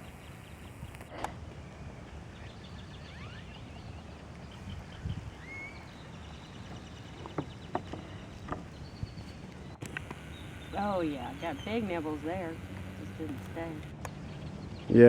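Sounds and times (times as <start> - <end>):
sharp clicks: 0.0 - 1.6, 5.4 - 14.9
faint bird chirps: 0.0 - 15.0
wind rumble on microphone: 0.0 - 15.0.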